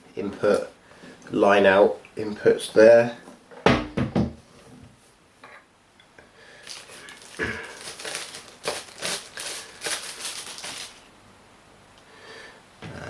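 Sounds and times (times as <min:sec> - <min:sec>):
packaging crinkling and rustling: 0:06.6 - 0:11.1.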